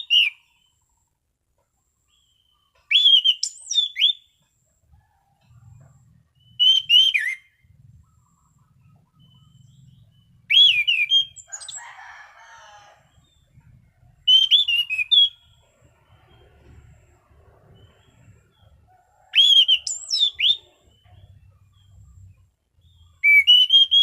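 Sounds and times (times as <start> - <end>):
thrush singing whistled notes: 0.0 - 0.8, 2.1 - 4.5, 5.6 - 11.9, 13.2 - 24.0.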